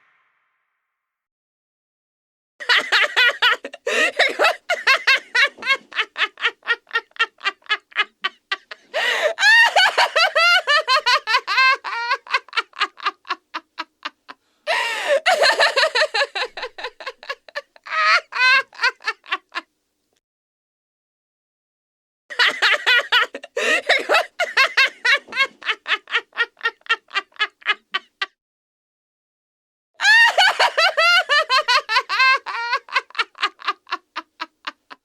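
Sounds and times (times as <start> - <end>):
high-pitched evil laugh: 15.2 - 19.6, 30.0 - 35.0.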